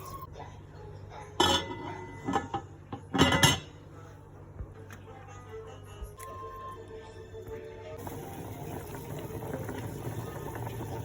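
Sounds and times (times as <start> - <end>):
dishes and utensils clattering: 1.4 - 3.8.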